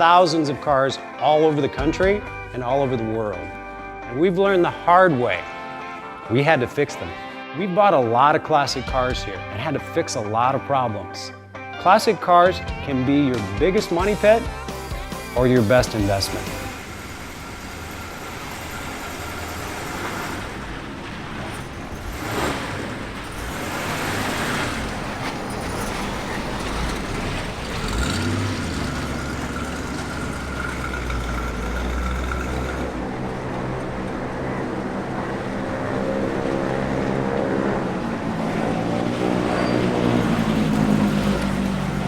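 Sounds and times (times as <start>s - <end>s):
engine revving: 14.0s - 42.0s
road noise: 14.0s - 42.0s
car engine: 15.3s - 42.0s.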